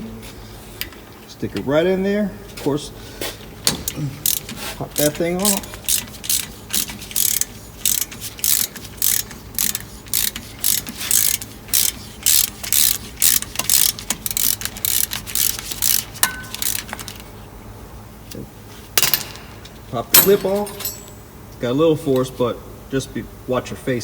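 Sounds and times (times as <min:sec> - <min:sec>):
ratchet wrench clicking: 0:03.7 - 0:17.3
light metallic clink: 0:20.2 - 0:21.2.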